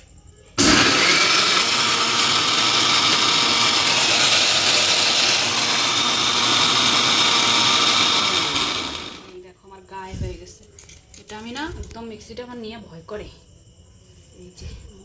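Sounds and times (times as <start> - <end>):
mixer grinder motor running: 0.6 - 9.4.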